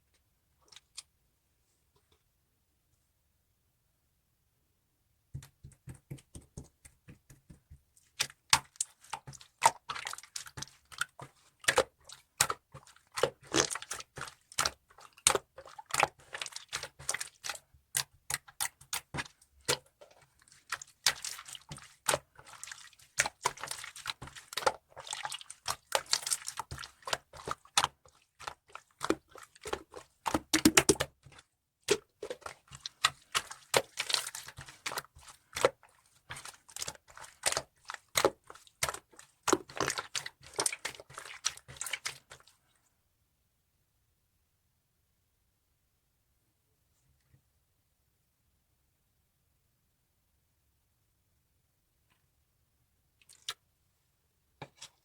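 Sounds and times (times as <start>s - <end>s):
slime squelching and popping: 5.4s - 42.5s, 53.2s - 53.6s.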